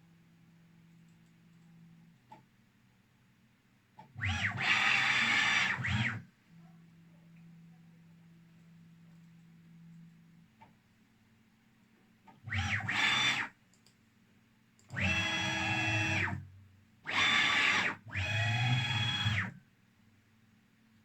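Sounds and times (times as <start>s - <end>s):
motor whine rising and falling: 17.1s - 19.5s.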